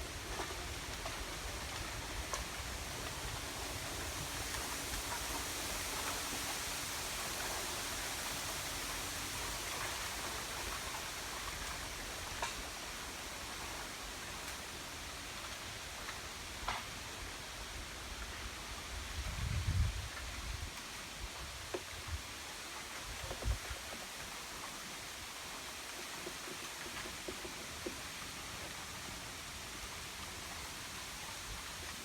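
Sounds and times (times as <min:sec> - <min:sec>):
wind rustling bamboo: 0:00.0 - 0:32.0.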